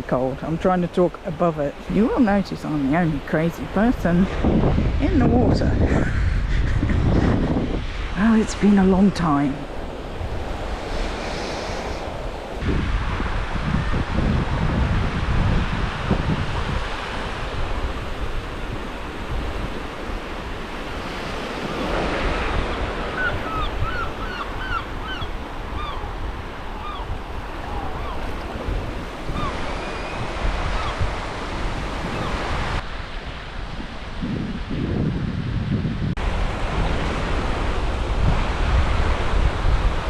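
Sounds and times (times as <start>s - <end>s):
waves on a pebble beach: 0.0s - 5.5s, 7.9s - 34.1s
wind buffeting microphone: 0.0s - 40.0s
gull calling: 23.1s - 28.6s, 29.3s - 31.0s.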